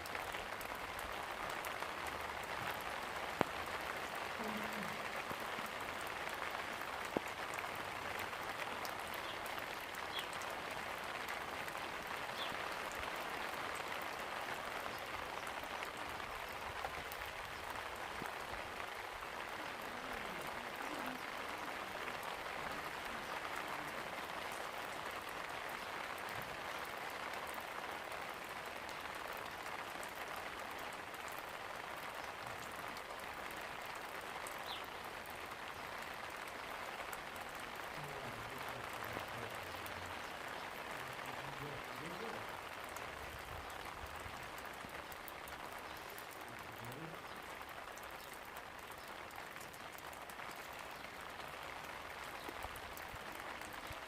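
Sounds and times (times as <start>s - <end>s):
single raindrops ticking: 0.0s - 54.0s
steady rain falling: 0.0s - 54.0s.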